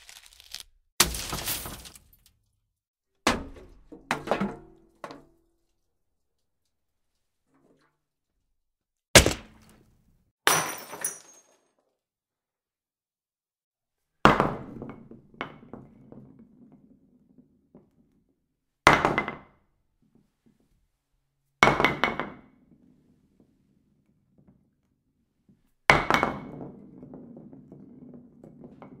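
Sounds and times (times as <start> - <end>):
impact with breaking clatter: 0.0 - 2.3, 9.2 - 9.7
small pieces clinking: 0.0 - 2.3.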